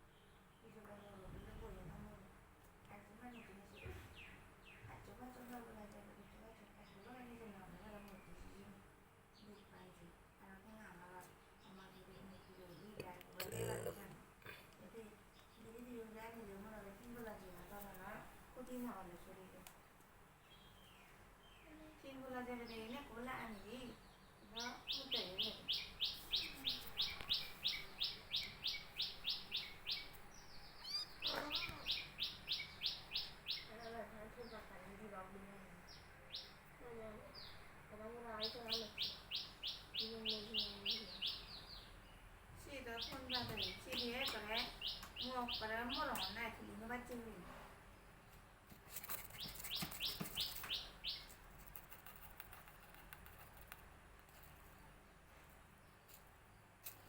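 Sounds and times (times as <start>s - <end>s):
bird chirping rapidly: 24.5s - 33.9s, 38.4s - 41.8s, 42.9s - 46.4s, 49.2s - 51.3s
lower bird call: 24.9s - 33.7s
high-pitched chirps: 30.8s - 32.0s.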